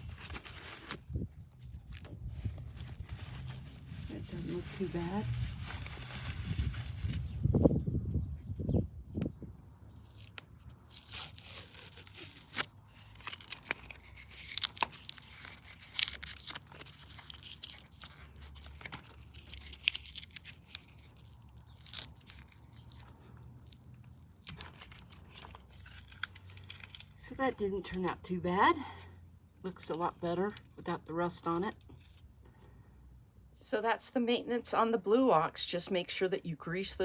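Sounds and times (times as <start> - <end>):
paper and tape peeling and crumpling: 0.0 - 7.6, 9.8 - 28.2, 29.9 - 32.4.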